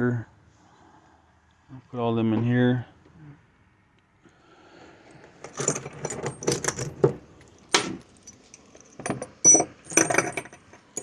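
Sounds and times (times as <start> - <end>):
metal bits clinking in tool box: 5.4 - 11.0.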